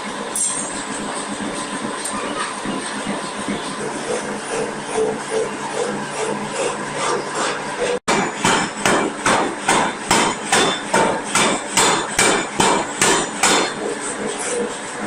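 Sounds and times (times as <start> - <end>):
machine noise: 0.0 - 15.0
forging hammer on metal: 5.0 - 14.8.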